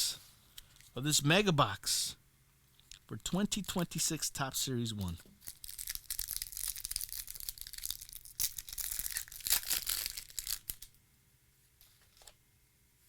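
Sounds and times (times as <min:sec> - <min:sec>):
foil wrapper tearing and crinkling: 0:05.4 - 0:11.0.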